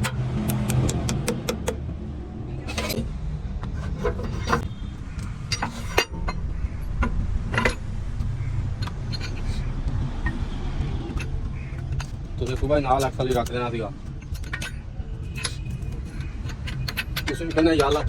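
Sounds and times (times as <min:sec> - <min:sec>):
steady low rumble: 0:00.0 - 0:18.0
sharp knocks: 0:00.4 - 0:01.9
metal tools clinking and scraping: 0:02.6 - 0:18.0.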